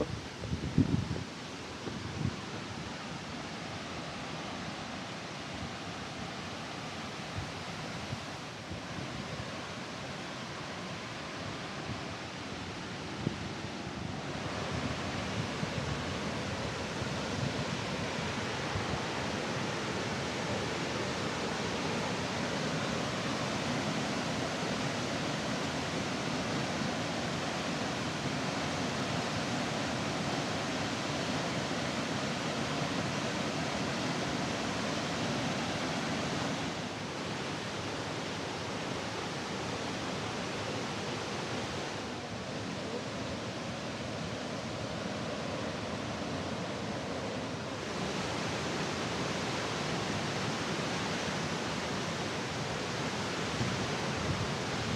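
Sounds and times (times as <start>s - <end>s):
waterfall rushing: 1.2s - 54.9s.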